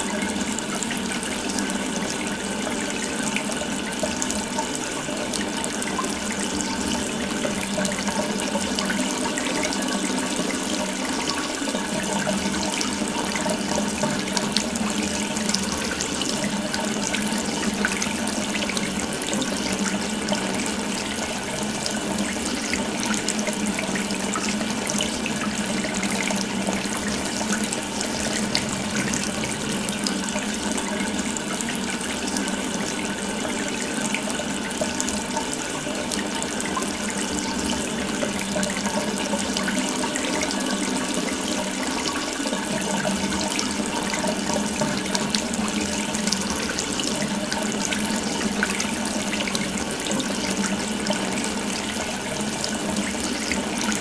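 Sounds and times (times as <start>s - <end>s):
water running from tap: 0.0s - 54.0s.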